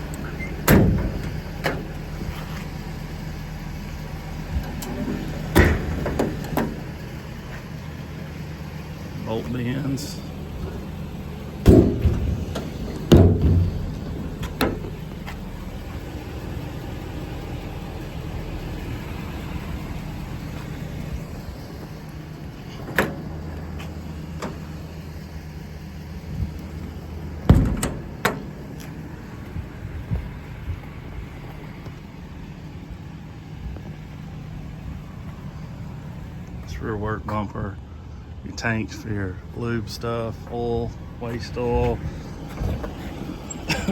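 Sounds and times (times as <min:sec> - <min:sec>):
metal doors slamming: 0:00.1 - 0:02.0, 0:04.7 - 0:07.0, 0:11.6 - 0:15.1, 0:22.7 - 0:23.4, 0:27.3 - 0:28.9.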